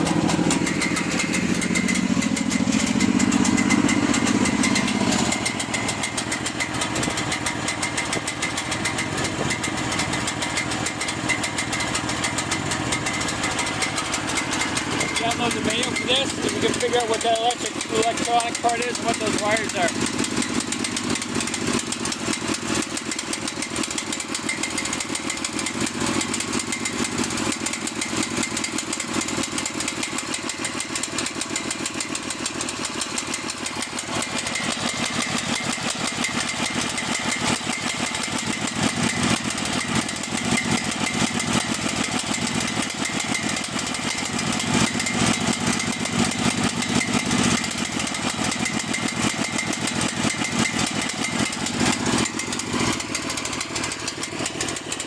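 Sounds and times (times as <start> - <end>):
excavator engine rough idle: 0.0 - 55.0.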